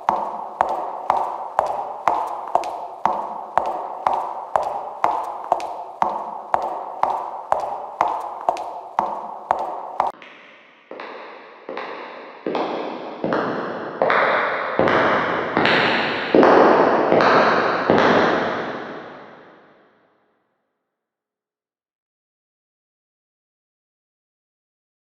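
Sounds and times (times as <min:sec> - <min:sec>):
soft footsteps: 0:00.0 - 0:10.2
hard footsteps: 0:00.0 - 0:10.3, 0:10.9 - 0:16.5.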